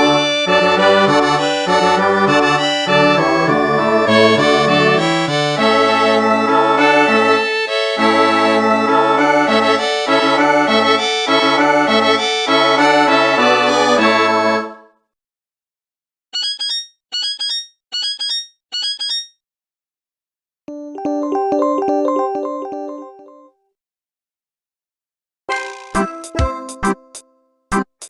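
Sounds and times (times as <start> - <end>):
polyphonic phone ringtone: 16.4 - 19.3, 20.7 - 23.5
ringtone high chirps: 16.4 - 19.4.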